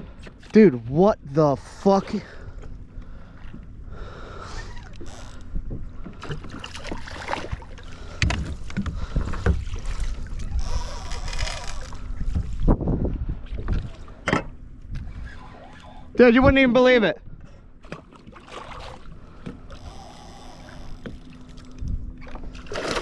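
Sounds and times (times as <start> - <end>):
low rumble: 0.0 - 16.6
water splashing: 6.2 - 12.7, 17.8 - 19.2, 19.8 - 23.0.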